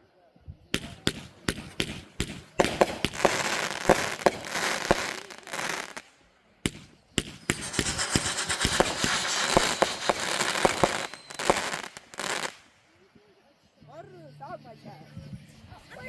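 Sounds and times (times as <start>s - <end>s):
fireworks cracks and bangs: 0.7s - 12.8s
fireworks crackling: 0.7s - 13.0s.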